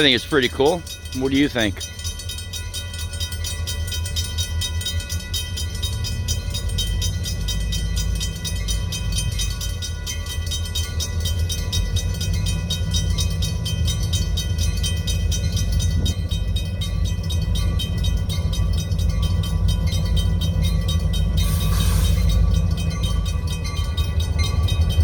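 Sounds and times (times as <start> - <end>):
freight train rumbling on rails: 0.0 - 25.0
high steady tones: 0.0 - 25.0
brief hiss: 21.4 - 22.2.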